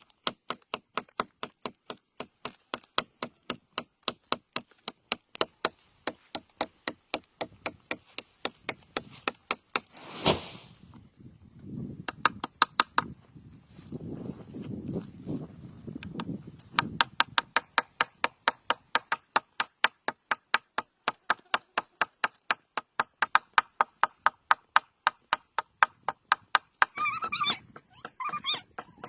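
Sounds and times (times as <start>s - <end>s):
short high calls: 27.0s - 28.7s.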